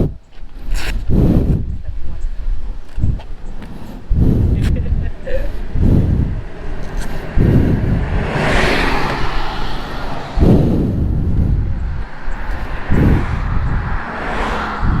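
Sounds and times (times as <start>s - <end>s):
wind on microphone: 0.0s - 15.0s
motorcycle engine running: 4.2s - 14.1s.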